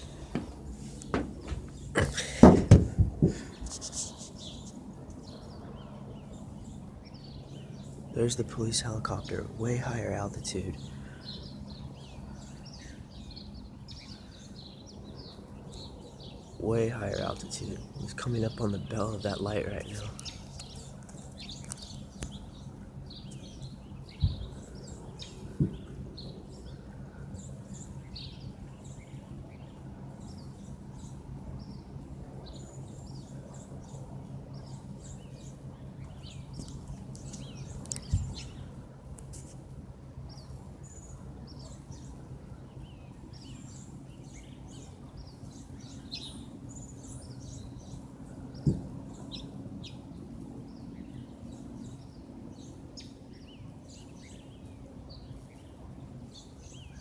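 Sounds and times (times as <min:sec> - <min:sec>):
helicopter drone: 0:00.0 - 0:57.0
small birds chirping: 0:00.0 - 0:57.0
sharp knocks: 0:00.3 - 0:03.5, 0:25.6 - 0:25.8.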